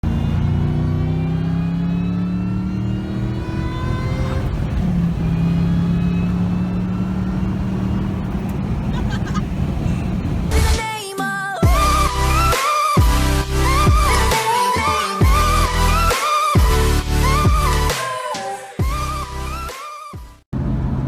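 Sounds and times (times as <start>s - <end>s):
car engine accelerating: 0.0s - 10.9s.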